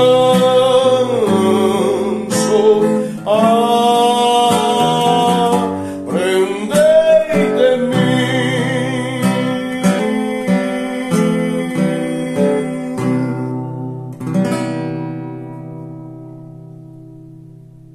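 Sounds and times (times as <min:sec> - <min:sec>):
person singing: 0:00.0 - 0:14.0
acoustic guitar playing a hymn: 0:00.0 - 0:17.9.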